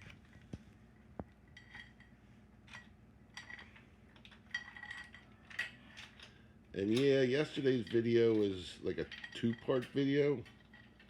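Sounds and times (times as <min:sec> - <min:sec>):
metallic clinks of parts and tools: 0:02.8 - 0:06.3, 0:07.8 - 0:11.0.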